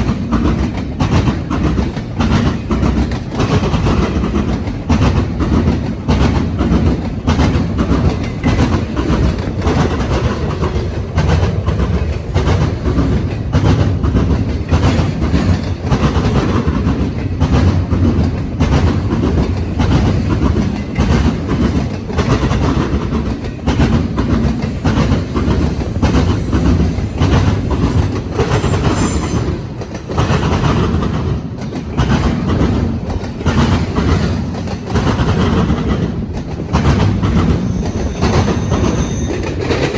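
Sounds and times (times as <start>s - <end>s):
train wheels pounding crossing: 0.0s - 39.9s
high wheel squeal: 23.6s - 29.9s, 37.3s - 39.9s.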